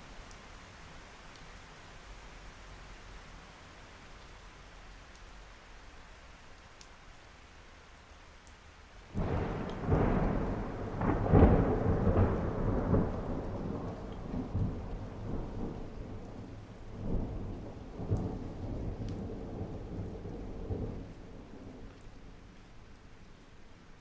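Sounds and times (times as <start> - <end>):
heavy rain: 0.0 - 24.0
thunder rolling: 9.2 - 16.4.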